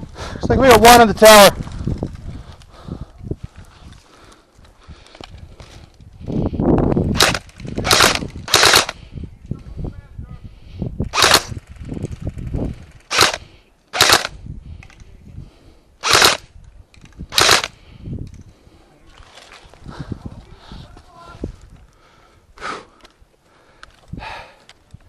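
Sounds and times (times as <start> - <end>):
airsoft rifle bursts: 7.2 - 9.0, 11.1 - 14.4, 16.0 - 16.5, 17.3 - 17.7
handling and movement noises: 18.2 - 22.0.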